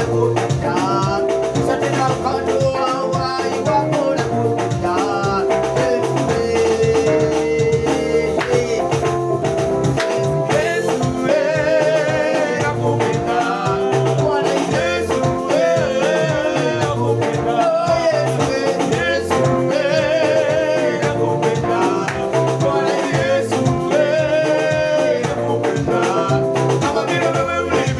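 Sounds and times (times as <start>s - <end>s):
person singing: 0.0s - 9.0s, 10.0s - 27.9s
upbeat music with drums and bass: 0.0s - 27.9s.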